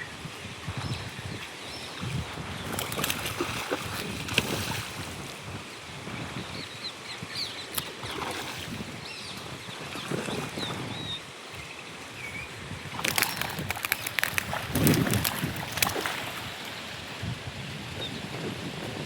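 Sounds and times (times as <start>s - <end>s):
wind buffeting microphone: 0.0s - 19.0s
birds chirping: 6.6s - 17.2s, 17.9s - 18.3s
sharp clicks: 13.0s - 16.0s.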